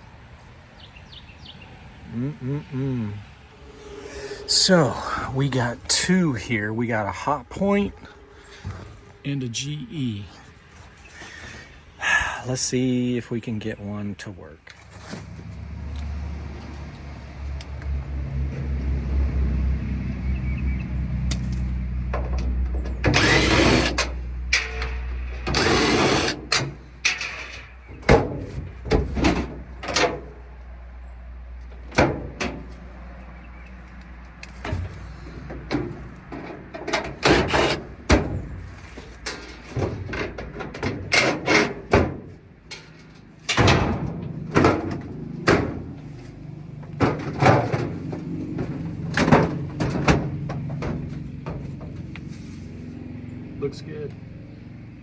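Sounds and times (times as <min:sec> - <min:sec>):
steady low hum: 0:02.0 - 0:13.5
metal cabinets scraping: 0:07.5 - 0:09.2, 0:14.8 - 0:16.3, 0:22.1 - 0:30.6, 0:31.6 - 0:33.7, 0:34.4 - 0:52.8.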